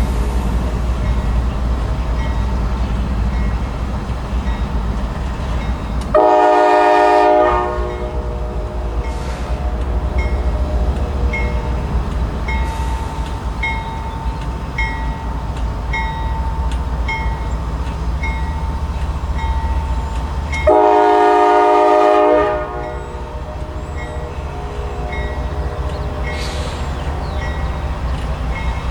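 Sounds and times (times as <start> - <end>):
low rumble of locomotive engine: 0.0 - 28.9
locomotive bell ringing: 1.0 - 28.9
locomotive air horn blast: 6.1 - 11.8, 20.6 - 27.0.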